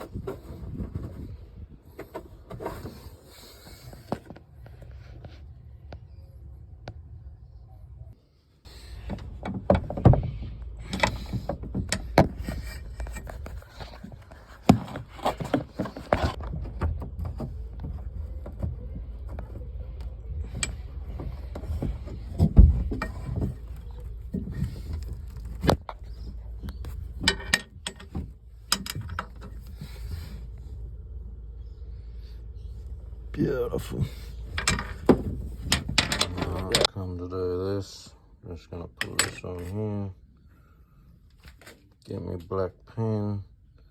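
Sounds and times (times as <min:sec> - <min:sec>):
steady low rumble: 0:00.0 - 0:36.9
knocks and clatter of tools: 0:09.0 - 0:30.3, 0:34.4 - 0:36.9, 0:39.0 - 0:39.7.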